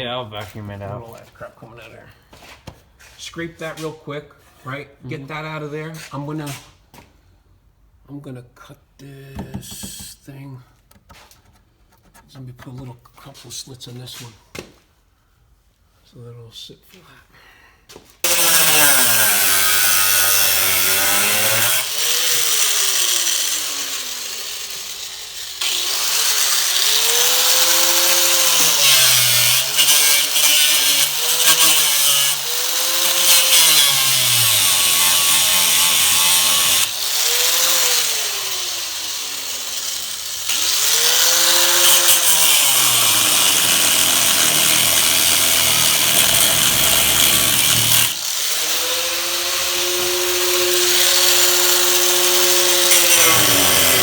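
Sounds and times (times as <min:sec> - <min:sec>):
power cut-off tool cutting metal: 0:18.2 - 0:54.0.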